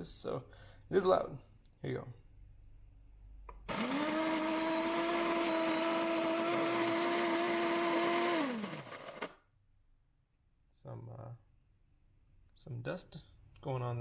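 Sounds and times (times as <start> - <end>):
beans being ground: 3.7 - 9.3
coffee grinder motor whine: 3.7 - 9.4.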